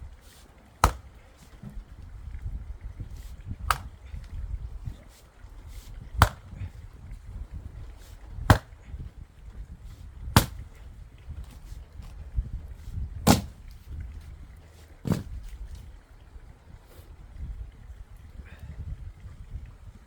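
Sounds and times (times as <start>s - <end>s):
axe chopping firewood: 0.8s - 1.8s, 3.4s - 4.3s, 5.9s - 6.9s, 8.2s - 9.1s, 10.2s - 10.8s, 13.1s - 13.7s, 15.0s - 15.4s.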